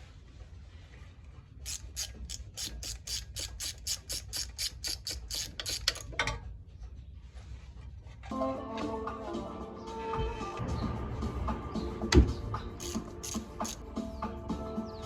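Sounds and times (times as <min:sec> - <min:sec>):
ratchet wrench clicking: 0:01.6 - 0:06.1, 0:12.8 - 0:13.8.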